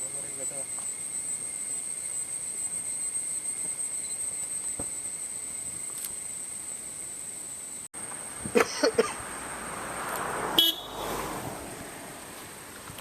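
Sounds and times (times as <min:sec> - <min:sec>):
vehicle passing: 0:09.1 - 0:12.9
vehicle horn tooting: 0:10.6 - 0:11.0.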